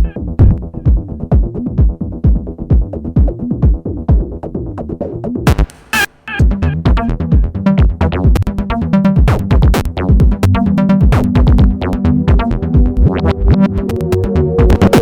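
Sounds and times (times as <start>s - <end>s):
electronic dance music: 5.5s - 7.1s.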